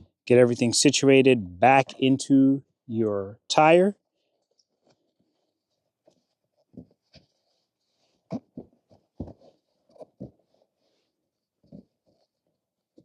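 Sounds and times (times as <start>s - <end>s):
soft knocks and handling noises: 4.2s - 13.0s.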